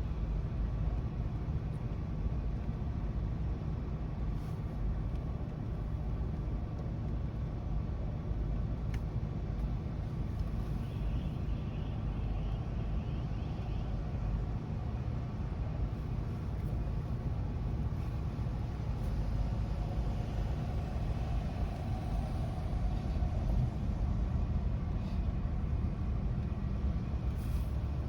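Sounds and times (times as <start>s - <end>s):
low outdoor rumble: 0.0s - 28.0s
faint click: 8.9s - 9.7s.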